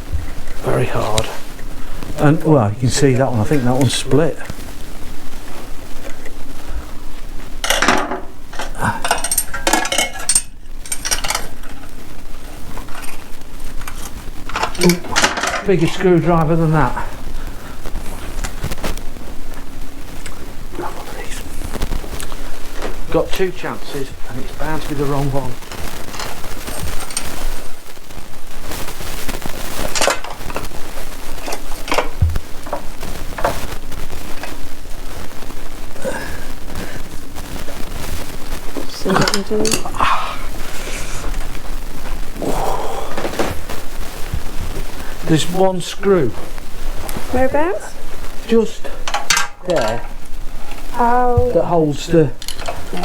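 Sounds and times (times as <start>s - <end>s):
metal hand tools clattering: 7.6s - 11.5s
screwdriver and metal parts clicking: 7.7s - 11.5s.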